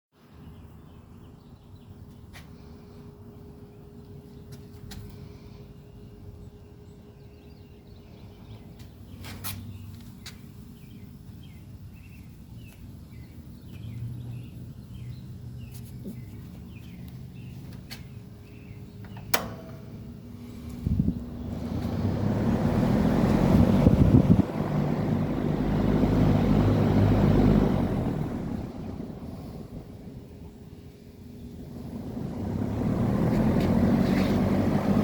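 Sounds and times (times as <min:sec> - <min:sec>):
birds chirping: 0:00.2 - 0:24.6
box fan motor humming: 0:18.5 - 0:30.6
sharp click: 0:19.0 - 0:19.9.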